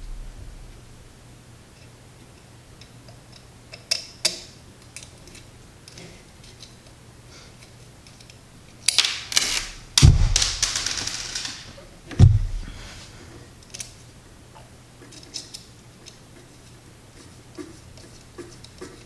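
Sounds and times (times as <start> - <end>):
metal hardware rattling: 8.9 - 13.1.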